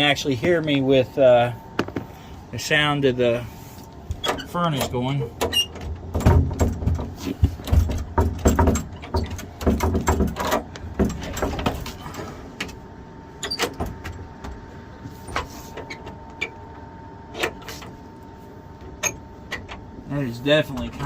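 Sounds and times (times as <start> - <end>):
furnace running: 0.0 - 21.0
sliding door rattling: 5.4 - 12.1.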